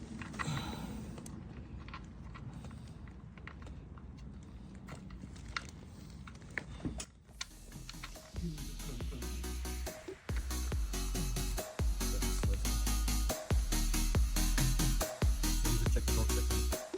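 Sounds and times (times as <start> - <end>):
low steady hum: 7.4 - 16.8.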